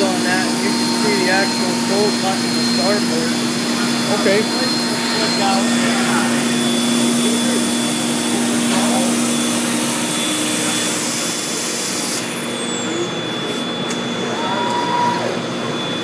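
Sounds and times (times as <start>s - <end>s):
machine whine: 0.0s - 16.0s.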